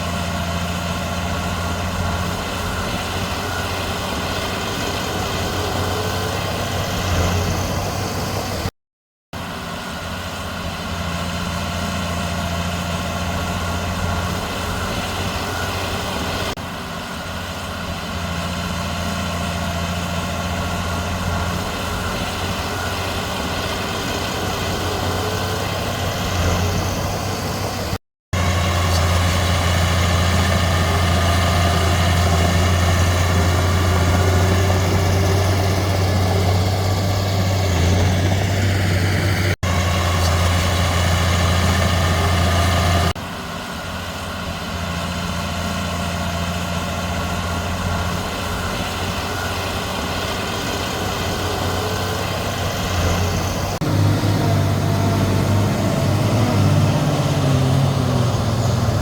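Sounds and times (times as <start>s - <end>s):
heavy diesel machinery droning: 0.0s - 8.7s, 9.4s - 59.0s.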